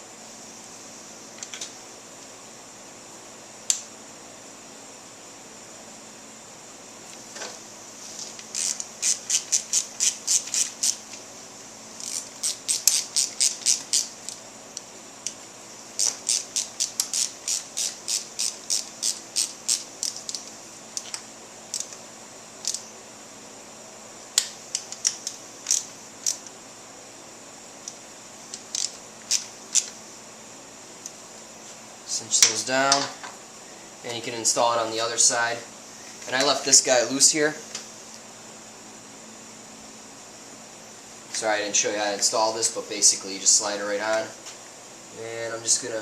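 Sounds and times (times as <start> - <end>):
ratchet wrench clicking: 8.4 - 11.1, 12.0 - 14.4, 16.0 - 21.1, 22.6 - 22.8, 24.7 - 26.4, 28.5 - 29.9.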